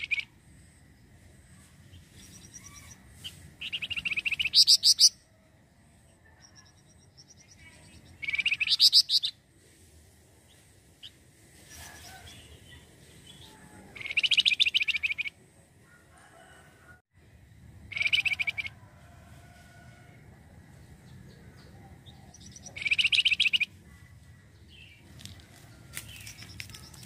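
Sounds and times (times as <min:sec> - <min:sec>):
bird chattering song: 0:00.0 - 0:00.3, 0:02.1 - 0:05.2, 0:06.4 - 0:09.4, 0:11.8 - 0:15.3, 0:17.9 - 0:18.7, 0:21.1 - 0:25.0.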